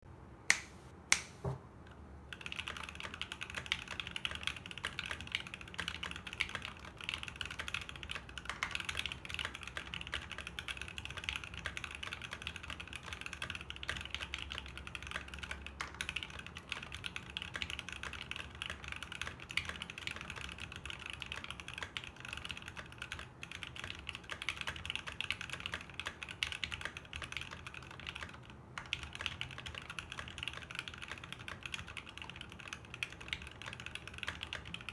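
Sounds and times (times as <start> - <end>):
mechanical keyboard typing: 2.3 - 34.9.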